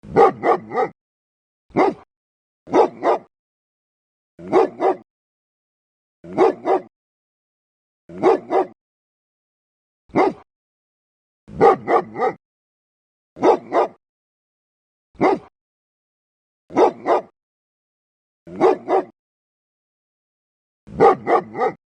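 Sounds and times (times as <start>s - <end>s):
dog barking: 0.0s - 1.0s, 1.7s - 2.1s, 2.7s - 3.3s, 4.4s - 5.1s, 6.2s - 6.9s, 8.1s - 8.8s, 10.1s - 10.5s, 11.5s - 12.4s, 13.4s - 14.0s, 15.2s - 15.5s, 16.7s - 17.4s, 18.5s - 19.2s, 20.9s - 21.8s.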